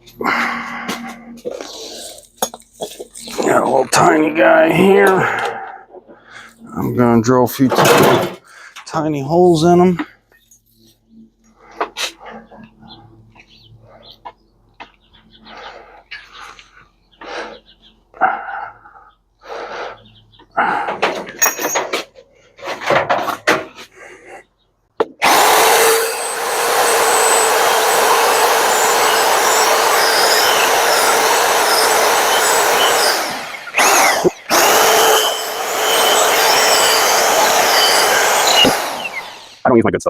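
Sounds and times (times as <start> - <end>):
power drill running: 25.2 - 39.7.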